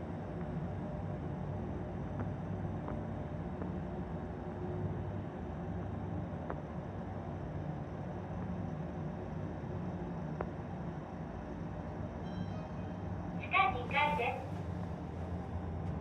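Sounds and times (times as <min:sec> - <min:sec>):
elevator low hum: 0:11.2 - 0:16.0.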